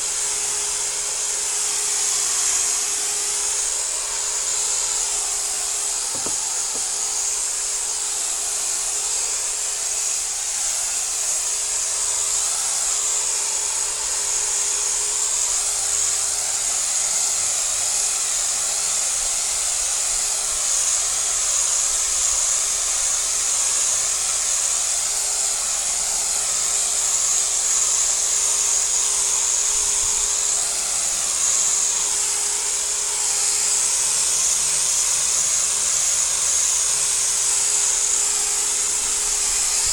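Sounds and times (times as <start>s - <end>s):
electric polisher whining: 0.0s - 39.9s.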